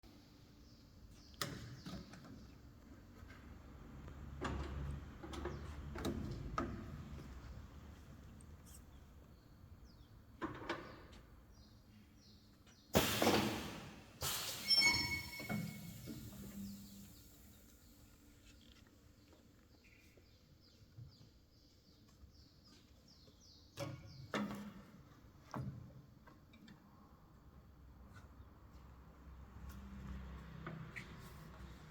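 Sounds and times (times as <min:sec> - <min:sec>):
welding machine clunks and knocks: 0:13.0 - 0:16.4
loud hissing burst: 0:13.0 - 0:17.5
clatter with ringing squeal: 0:14.2 - 0:16.2.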